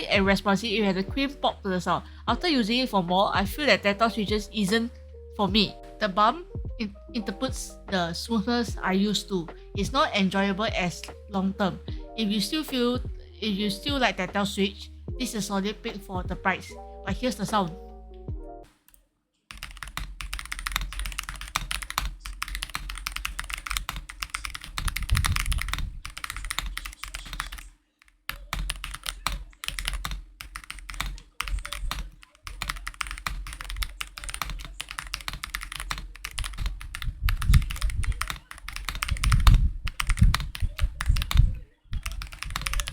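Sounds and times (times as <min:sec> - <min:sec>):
mechanical keyboard typing: 0:19.5 - 0:42.9.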